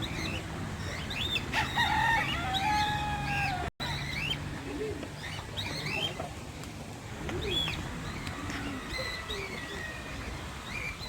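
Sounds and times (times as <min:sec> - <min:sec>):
birds chirping and whistling: 0:00.0 - 0:06.4, 0:07.3 - 0:11.0.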